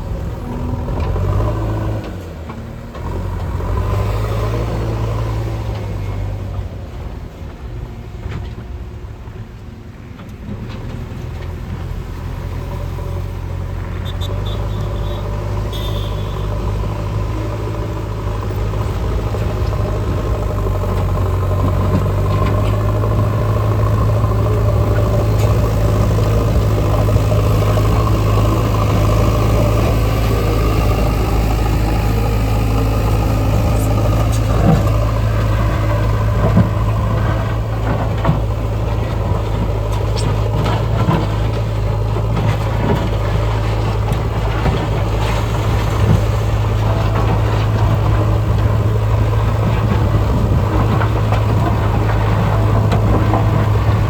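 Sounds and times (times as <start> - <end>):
diesel engine of heavy machinery: 0.0 - 54.0.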